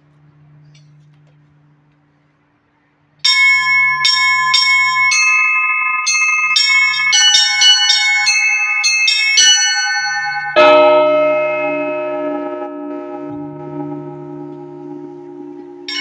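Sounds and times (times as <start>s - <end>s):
deep church bell ringing: 3.2s - 16.0s
small high-pitched bells striking: 3.2s - 16.0s.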